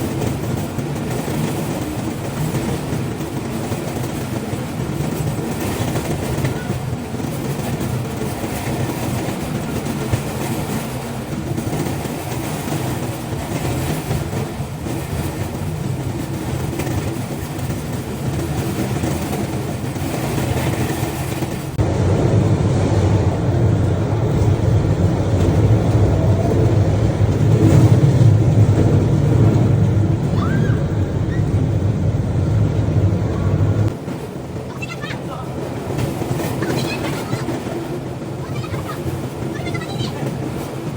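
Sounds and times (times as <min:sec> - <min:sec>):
steel wheels rolling on rails: 0:00.0 - 0:40.9.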